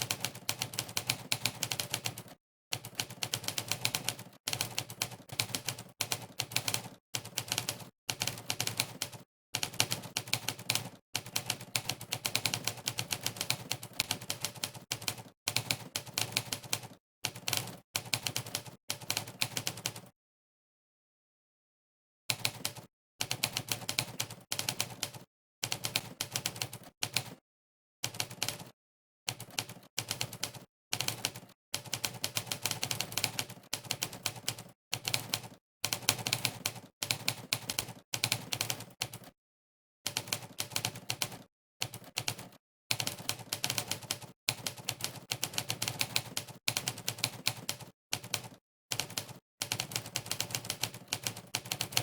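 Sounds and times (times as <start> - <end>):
typewriter keystroke clacks: 40.1 - 52.0.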